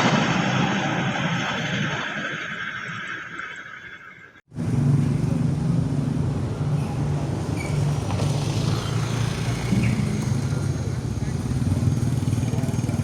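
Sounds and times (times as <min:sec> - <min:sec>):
engines rumbling: 0:04.5 - 0:13.0.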